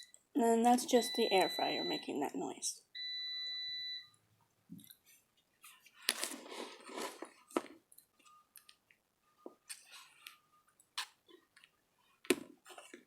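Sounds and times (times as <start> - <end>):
air fryer beeping: 1.0 - 2.1, 3.0 - 4.1.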